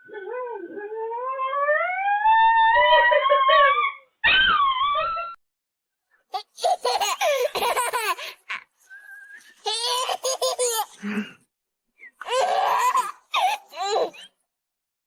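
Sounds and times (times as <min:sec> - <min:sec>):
people laughing hard: 0:06.4 - 0:08.6.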